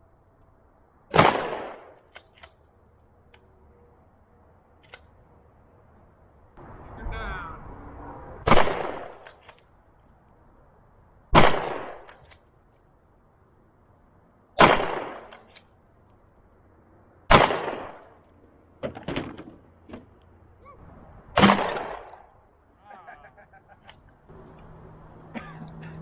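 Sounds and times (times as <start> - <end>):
gunshots with echo: 1.1 - 2.0, 8.5 - 9.2, 11.4 - 12.1, 14.6 - 15.3, 17.3 - 18.0, 21.4 - 22.2.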